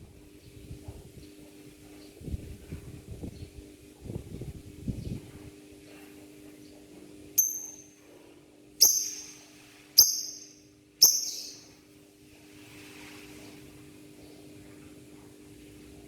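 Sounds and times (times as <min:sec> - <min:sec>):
bird shrill calls: 0:07.4 - 0:07.9, 0:08.8 - 0:11.8.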